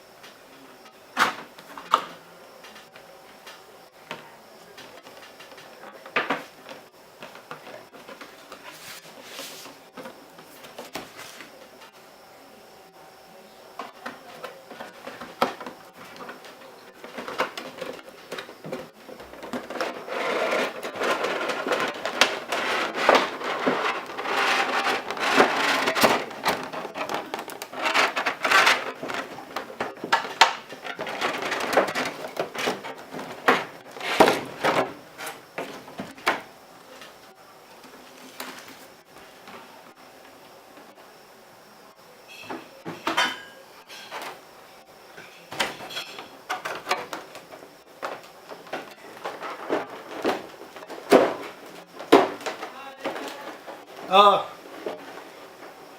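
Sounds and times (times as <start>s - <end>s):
packaging rustling: 17.3s - 35.6s.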